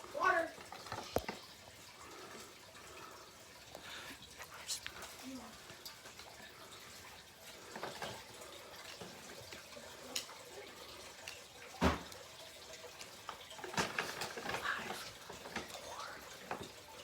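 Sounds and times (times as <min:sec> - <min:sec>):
thump: 0:11.8 - 0:12.1
small objects clicking and rustling: 0:13.0 - 0:15.9.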